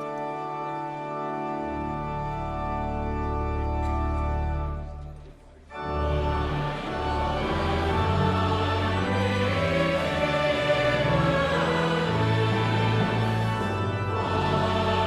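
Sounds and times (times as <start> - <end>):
organ chord: 0.0 - 15.0
choir singing a hymn: 5.8 - 15.0.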